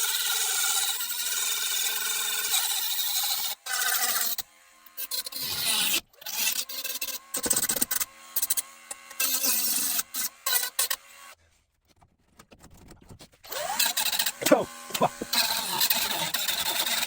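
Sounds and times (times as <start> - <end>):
abrasive power tool whining: 13.5 - 17.0.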